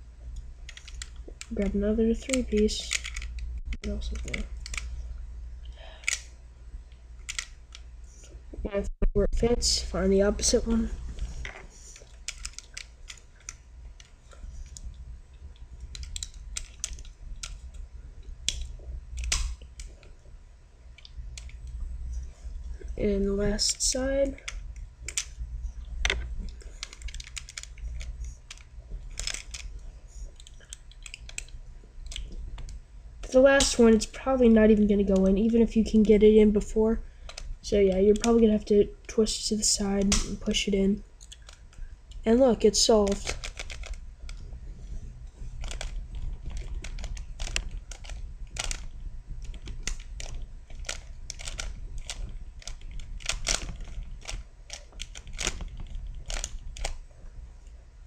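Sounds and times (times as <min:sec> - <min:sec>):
steady low hum: 0:00.0 - 0:58.0
plastic cube pieces clicking: 0:00.7 - 0:04.9, 0:05.9 - 0:06.3, 0:07.2 - 0:07.9, 0:12.0 - 0:15.0, 0:15.8 - 0:17.8, 0:18.4 - 0:20.0, 0:24.2 - 0:25.3, 0:26.1 - 0:29.7, 0:30.4 - 0:32.8, 0:42.8 - 0:44.4, 0:45.6 - 0:57.0.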